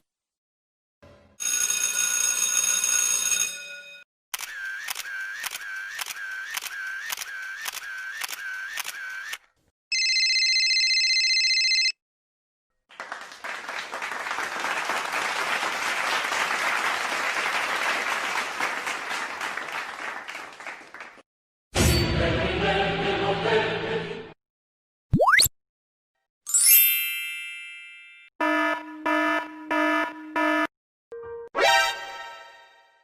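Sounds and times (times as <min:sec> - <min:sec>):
applause: 0:12.8 - 0:21.2
buzzer tone: 0:28.4 - 0:30.7.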